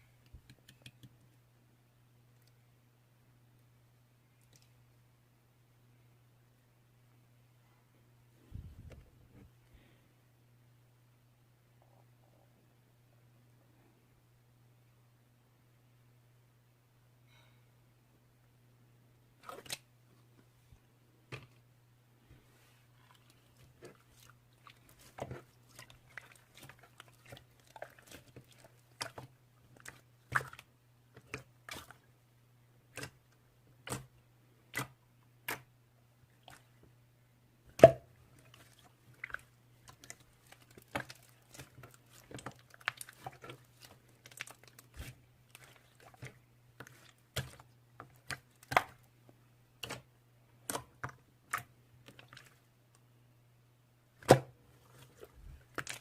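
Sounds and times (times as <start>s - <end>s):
steady low hum: 1.2s - 40.6s.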